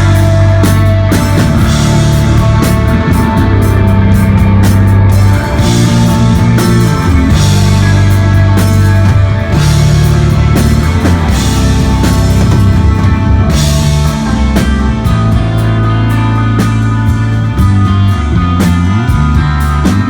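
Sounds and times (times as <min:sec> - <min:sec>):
electric guitar: 0:00.0 - 0:20.0
heavy bass notes: 0:00.0 - 0:20.0
rock band playing: 0:00.0 - 0:20.0.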